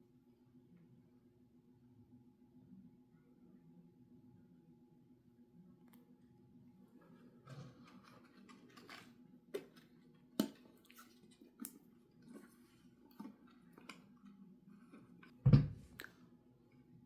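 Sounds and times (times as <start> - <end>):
thump: 15.4 - 15.8.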